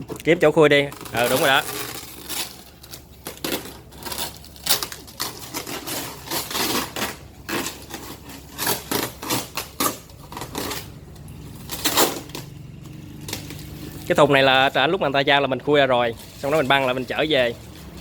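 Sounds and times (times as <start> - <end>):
cardboard box rustling and scraping: 1.0 - 12.6.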